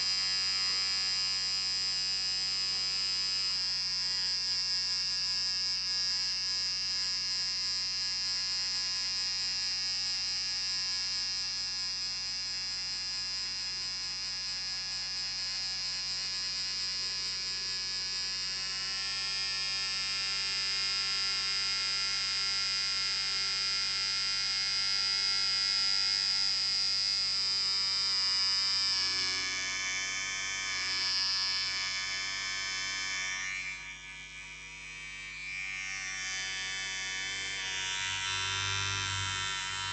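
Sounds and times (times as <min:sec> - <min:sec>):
electric beard trimmer buzzing: 0:00.0 - 0:39.9.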